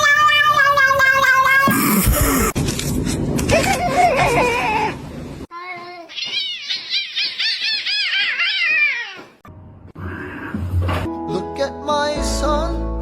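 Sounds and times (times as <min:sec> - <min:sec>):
cat meowing: 0:00.0 - 0:02.1, 0:06.1 - 0:09.4
music: 0:10.6 - 0:13.0.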